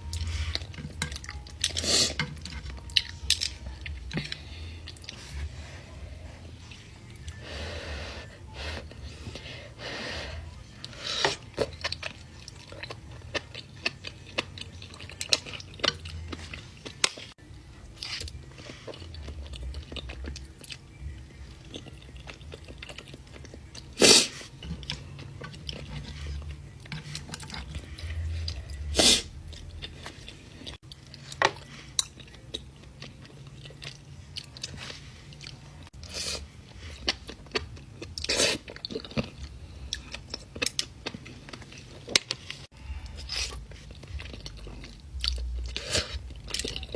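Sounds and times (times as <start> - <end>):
wet chewing: 11.3 - 46.9.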